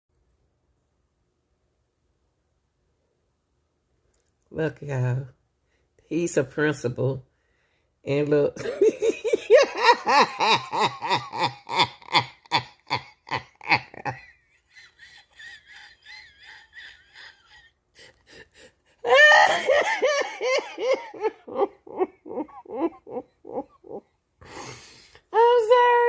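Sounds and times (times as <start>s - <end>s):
woman laughing hard: 8.6s - 24.8s
high-pitched wheezing laugh: 9.1s - 25.0s.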